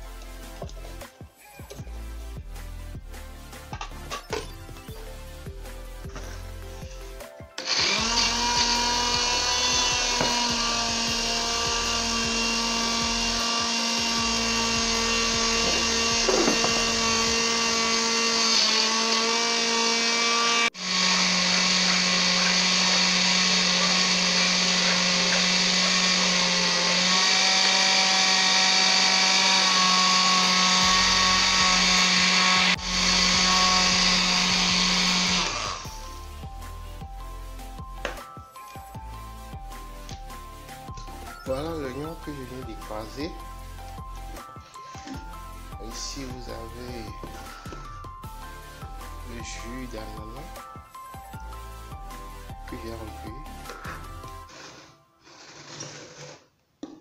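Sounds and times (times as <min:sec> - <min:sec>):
electric blender motor whine: 0:07.6 - 0:36.2, 0:52.8 - 0:56.4.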